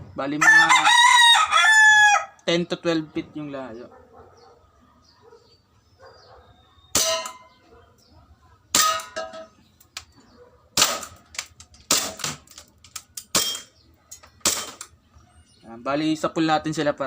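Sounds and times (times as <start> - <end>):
airsoft pistol shots: 7.0 - 7.4, 10.8 - 11.3, 11.9 - 12.4.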